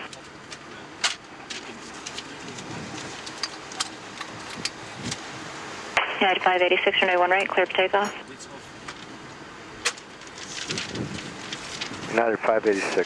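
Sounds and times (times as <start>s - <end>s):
cockpit ambience hiss: 0.0s - 13.0s.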